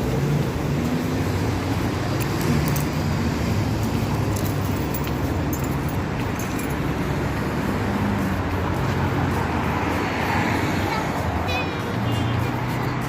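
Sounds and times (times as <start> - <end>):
road traffic hum: 0.0 - 13.0
light clicks and jingles: 1.7 - 9.4.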